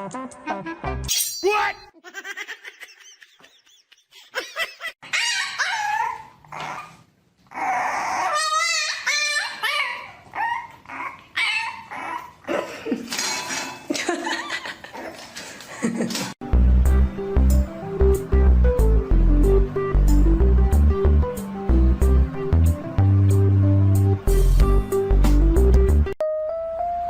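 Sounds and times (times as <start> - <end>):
pet animal crying and yelping: 5.0 - 12.5.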